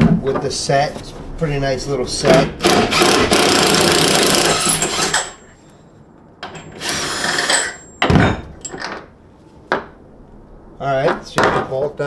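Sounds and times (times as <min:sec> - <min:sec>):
power drill motor whine: 0:02.6 - 0:05.5, 0:06.6 - 0:07.8
heavy thump: 0:08.0 - 0:08.6, 0:09.7 - 0:11.8.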